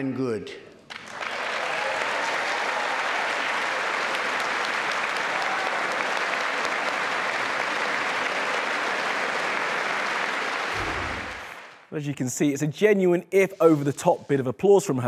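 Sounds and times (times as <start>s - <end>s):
audience applauding: 0.9s - 11.9s.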